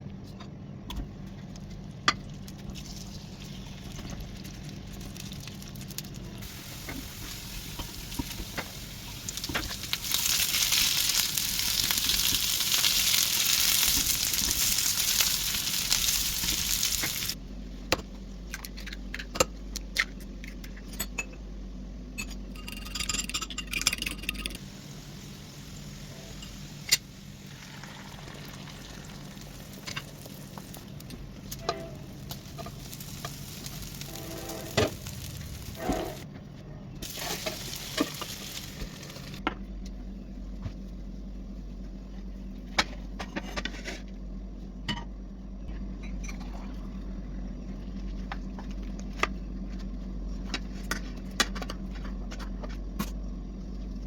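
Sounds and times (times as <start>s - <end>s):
loud steady hiss: 6.4s - 12.5s.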